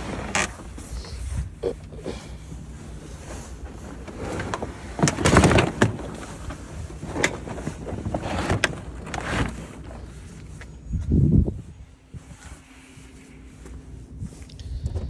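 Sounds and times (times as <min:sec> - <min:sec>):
rustling: 0:00.0 - 0:14.8
plastic totes knocking and clattering: 0:03.8 - 0:10.0.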